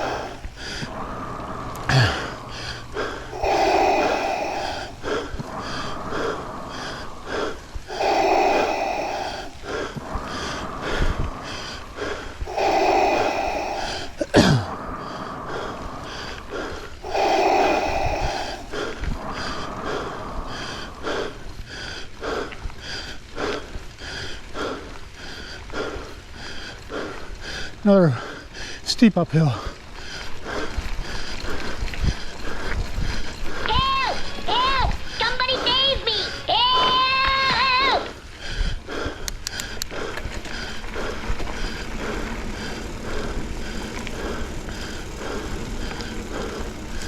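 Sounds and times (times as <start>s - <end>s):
person breathing hard: 0.0s - 28.9s, 29.5s - 47.0s
bike clicks and rattles: 29.8s - 33.7s, 38.3s - 47.0s.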